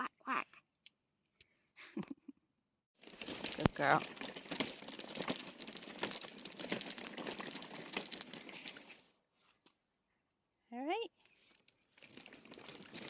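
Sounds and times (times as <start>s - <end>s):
crinkly rustling with clicks: 3.0s - 9.8s, 11.2s - 13.0s.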